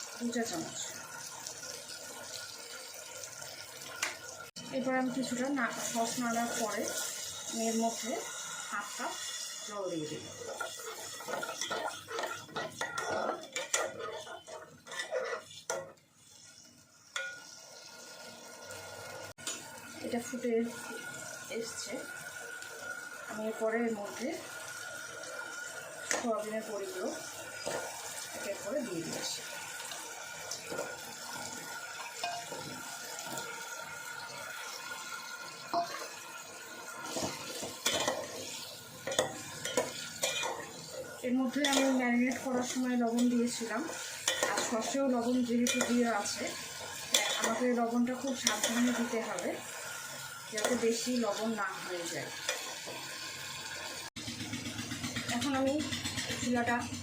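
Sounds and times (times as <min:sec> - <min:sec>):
spoon scraping metal pan: 0:05.1 - 0:17.6, 0:35.7 - 0:36.2, 0:37.0 - 0:53.3.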